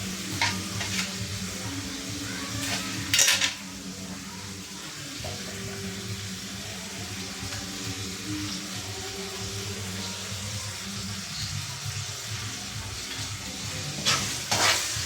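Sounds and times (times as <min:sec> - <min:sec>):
food sizzling in pan: 0:00.0 - 0:15.0
metal spatula clattering on pan: 0:02.7 - 0:03.6.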